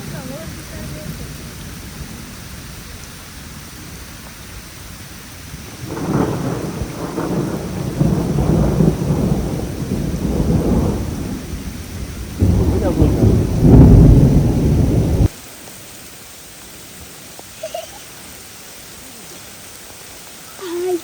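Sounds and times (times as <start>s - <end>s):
thunder rumbling: 0.0s - 15.4s
heavy rain: 0.0s - 21.0s.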